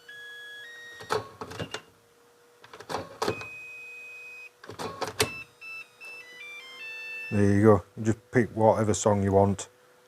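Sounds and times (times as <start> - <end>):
battery charger beeping: 0.0 - 2.0, 2.8 - 7.6.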